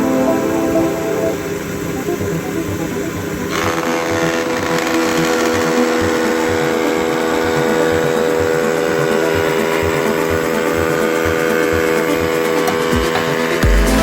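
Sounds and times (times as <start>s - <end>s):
electric power tool running: 3.4s - 11.8s
background music with a beat: 5.2s - 14.0s.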